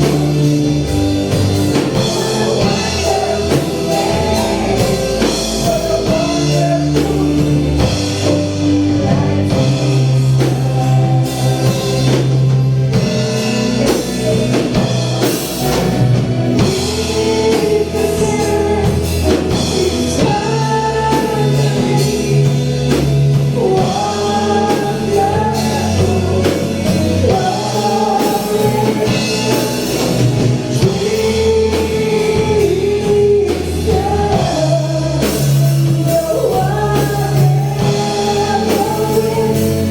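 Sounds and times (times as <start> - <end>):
band with steady beat: 0.0 - 39.9
person singing: 0.0 - 39.9.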